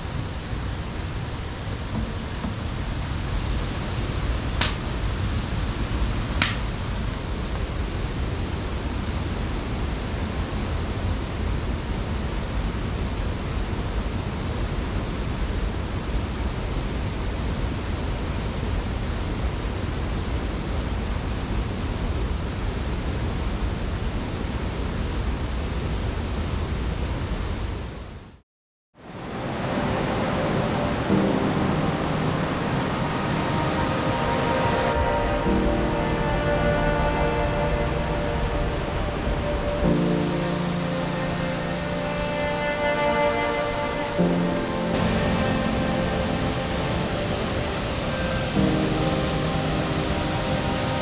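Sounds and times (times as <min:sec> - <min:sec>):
waterfall rushing: 0:29.0 - 0:51.0.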